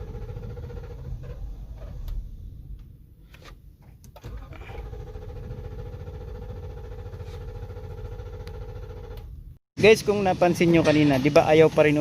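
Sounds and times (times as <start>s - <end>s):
engine cranking on starter: 0.0s - 2.5s, 4.1s - 9.4s.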